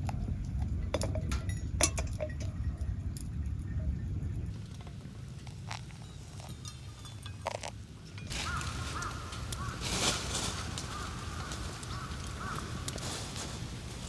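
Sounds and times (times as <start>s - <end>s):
steady low rumble: 0.0s - 14.0s
light clinks: 0.5s - 14.0s
bird calling: 4.6s - 14.0s.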